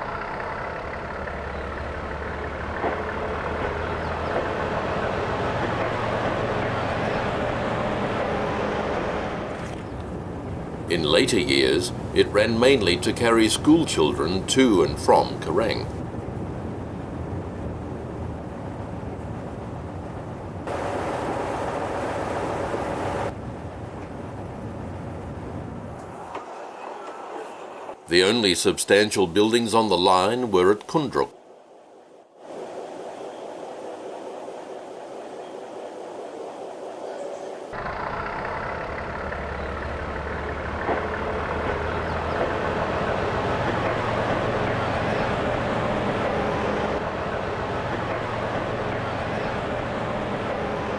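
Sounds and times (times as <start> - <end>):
diesel rail motor running: 0.0 - 16.0, 16.6 - 24.7, 37.8 - 50.9.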